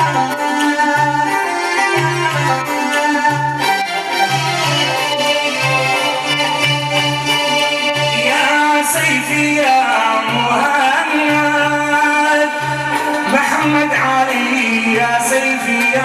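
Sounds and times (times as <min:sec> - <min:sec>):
man singing melismatic melody: 0:00.0 - 0:16.0
electronic keyboard organ notes: 0:01.4 - 0:08.5.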